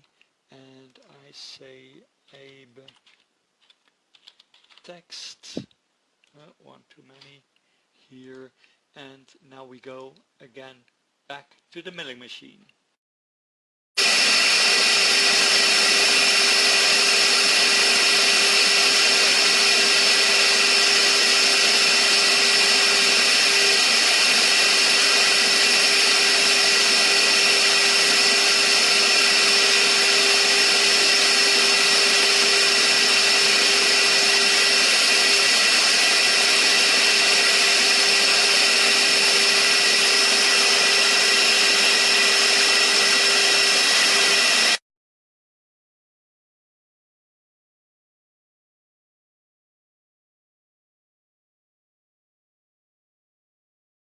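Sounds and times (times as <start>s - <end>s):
milling spindle whine: 14.0s - 44.8s.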